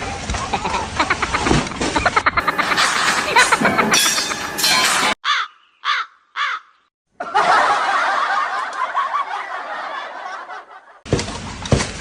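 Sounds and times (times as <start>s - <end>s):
dense laughter: 0.5s - 4.0s, 7.2s - 11.0s
short caws: 5.2s - 6.7s.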